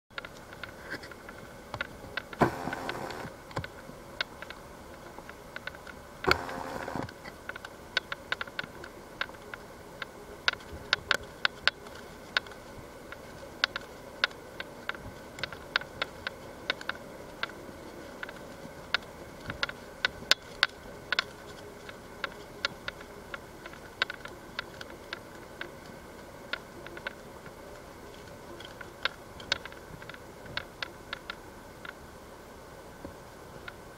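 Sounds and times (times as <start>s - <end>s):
raindrops ticking on hard surface: 0.1s - 32.1s
short noisy bursts: 2.4s - 3.3s, 6.2s - 7.1s.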